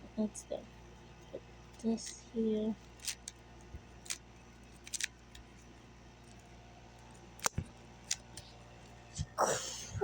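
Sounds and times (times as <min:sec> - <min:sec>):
puzzle cube clicking: 0:04.8 - 0:05.4.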